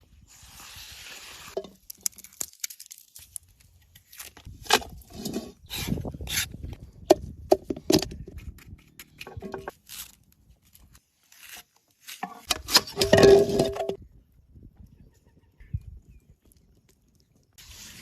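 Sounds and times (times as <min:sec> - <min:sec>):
knocks and clatters of handling: 0:07.1 - 0:09.8, 0:12.2 - 0:14.0.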